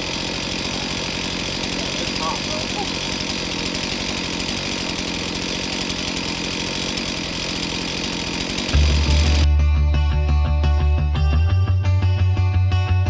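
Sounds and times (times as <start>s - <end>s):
two-stroke chainsaw running: 0.0s - 10.4s.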